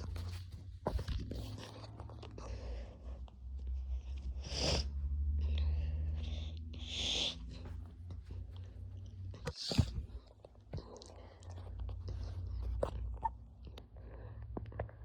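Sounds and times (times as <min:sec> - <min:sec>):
rustling and crinkling handling: 0:00.0 - 0:02.4.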